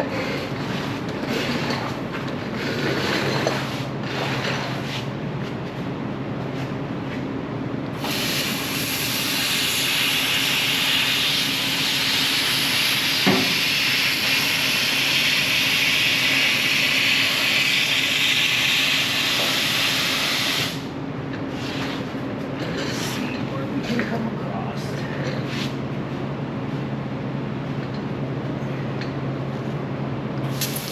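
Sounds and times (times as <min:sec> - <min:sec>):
laser cutter hiss: 0:08.0 - 0:20.9.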